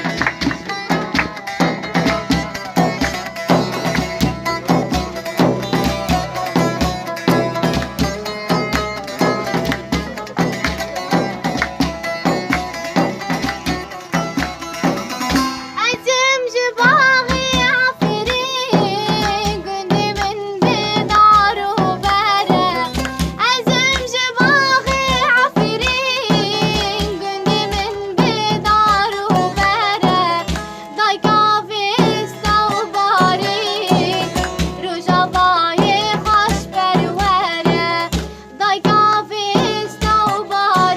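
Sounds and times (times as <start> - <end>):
steady drum beat: 0.0 - 15.7, 16.8 - 40.9
folk instrumental backing: 0.0 - 40.9
young woman singing: 15.8 - 40.9.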